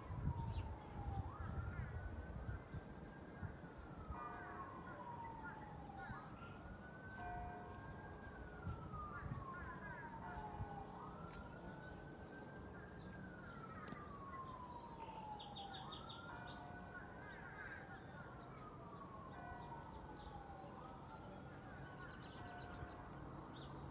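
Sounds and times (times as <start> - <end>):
siren wailing: 0.0 - 23.8.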